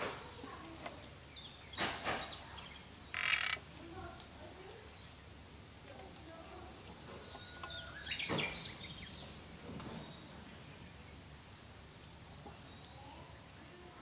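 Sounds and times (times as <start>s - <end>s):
background hiss: 0.0s - 14.0s
frog calling: 3.0s - 3.8s.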